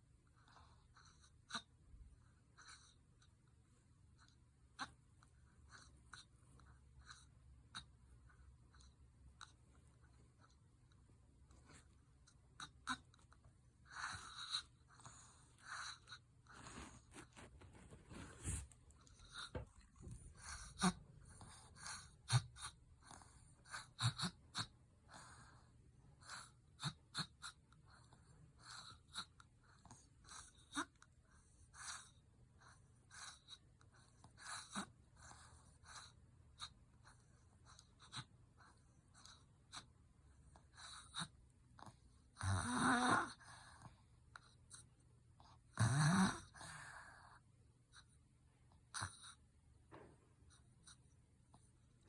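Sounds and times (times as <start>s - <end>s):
child snoring: 42.4s - 43.4s, 45.8s - 46.6s.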